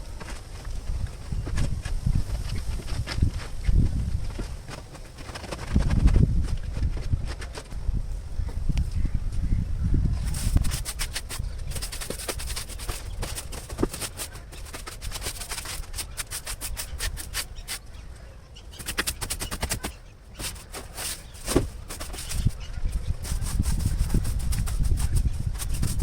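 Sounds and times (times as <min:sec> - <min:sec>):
scraping and scrubbing strokes: 0:10.2 - 0:17.9, 0:18.7 - 0:26.0.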